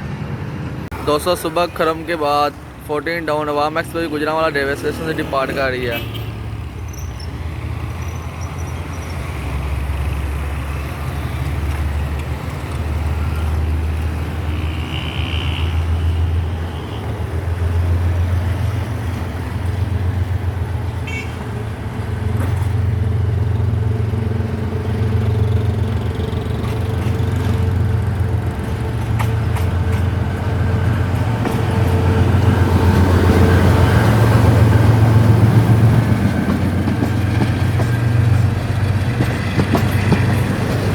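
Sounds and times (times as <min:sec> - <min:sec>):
diesel locomotive engine rumbling: 0:00.0 - 0:40.9.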